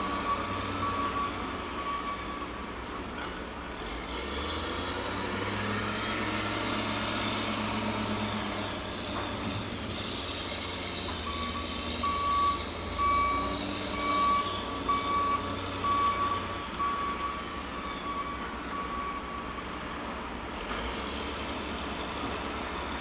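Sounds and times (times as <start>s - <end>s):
reversing alarm beeping: 0.0s - 2.7s, 11.1s - 19.8s.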